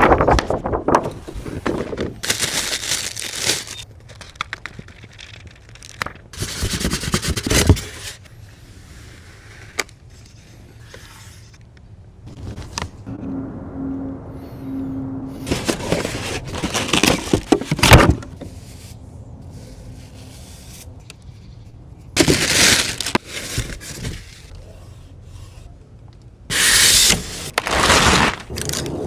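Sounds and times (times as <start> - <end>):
packaging rustling and scraping: 0.0 - 8.3, 15.4 - 19.0, 22.2 - 24.5, 26.5 - 29.0.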